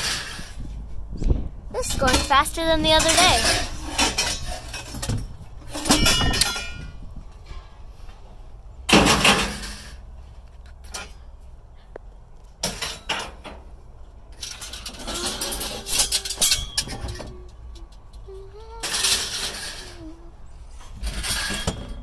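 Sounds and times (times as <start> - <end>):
scrap metal clanking: 1.8 - 8.2, 8.9 - 10.1, 14.4 - 17.5, 18.8 - 22.0
metal crash: 8.9 - 10.0.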